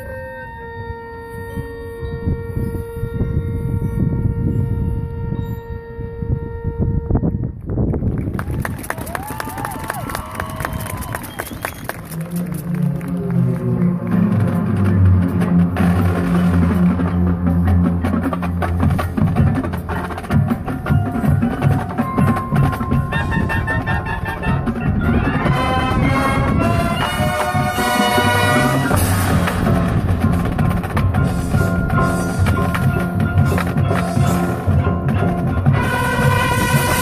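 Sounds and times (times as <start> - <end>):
marching band playing: 9.2 - 37.0
low brass chords: 12.2 - 37.0
drums: 13.8 - 37.0.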